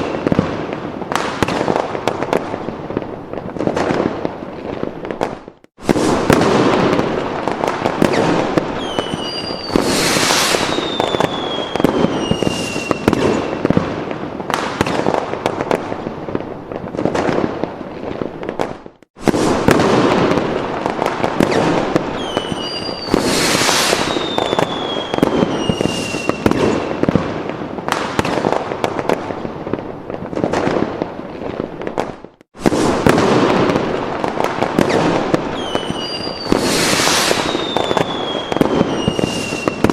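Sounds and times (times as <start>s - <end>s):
falling firework whistles: 0.0s - 1.8s, 5.2s - 15.2s, 18.6s - 27.3s, 32.6s - 39.9s
fireworks crackling and banging: 0.0s - 39.9s.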